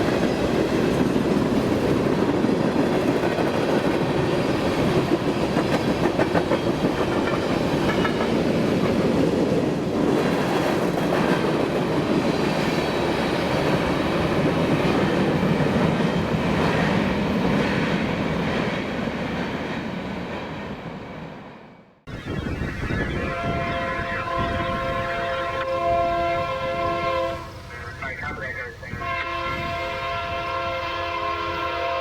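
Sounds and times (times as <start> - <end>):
freight train wheels clicking on rails: 0.0 - 20.6.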